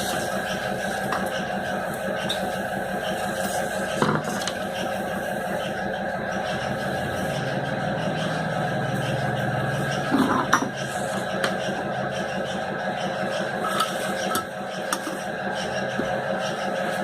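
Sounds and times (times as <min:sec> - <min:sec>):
steady background hum: 0:00.0 - 0:17.0.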